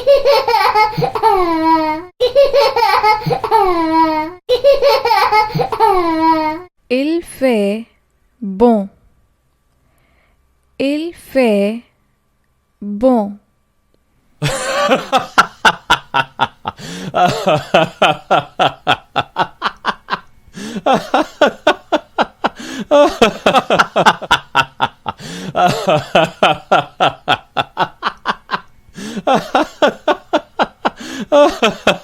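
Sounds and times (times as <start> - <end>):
person laughing: 14.4 - 32.0.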